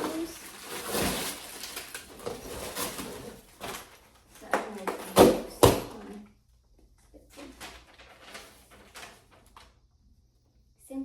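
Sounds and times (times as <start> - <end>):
rustling and scraping of parts: 0.0 - 5.2, 7.3 - 9.8.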